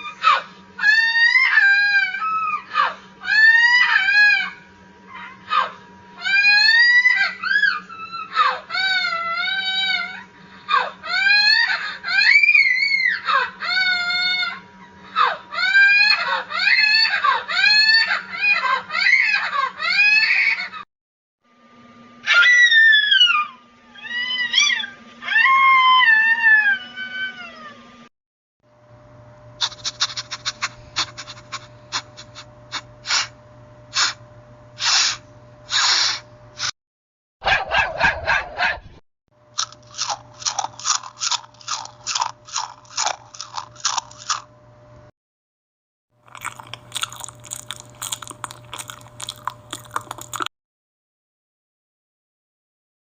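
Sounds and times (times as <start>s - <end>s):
whining meow-like cries: 0.0s - 20.8s, 22.2s - 28.0s
crisp crunching clicks: 39.6s - 44.5s, 46.3s - 50.5s.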